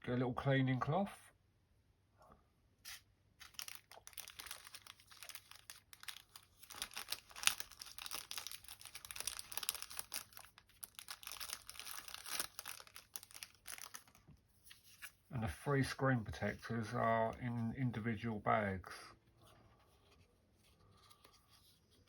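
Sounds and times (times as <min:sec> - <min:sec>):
plastic packaging crinkling: 0:03.4 - 0:15.0.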